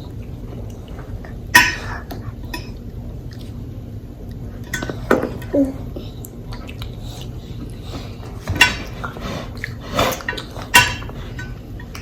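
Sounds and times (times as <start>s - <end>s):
cutlery and dishes clinking: 8.4s - 9.0s, 10.0s - 12.0s.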